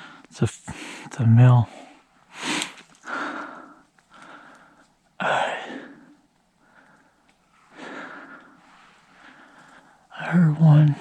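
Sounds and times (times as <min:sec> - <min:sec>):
man breathing: 0:01.8 - 0:10.2.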